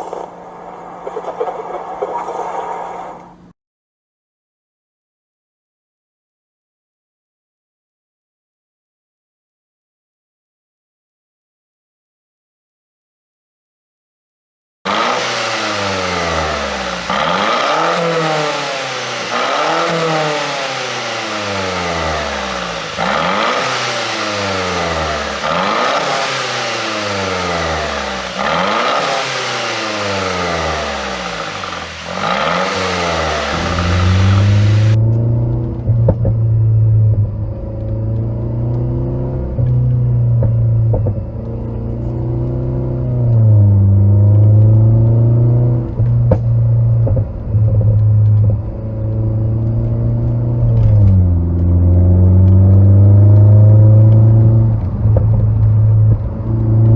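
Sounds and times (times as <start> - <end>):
car engine idling: 0.0 - 3.5, 14.9 - 35.0
car exhaust revving: 0.0 - 3.5, 14.9 - 56.9
exhaust pops: 14.9 - 38.8, 44.3 - 56.9.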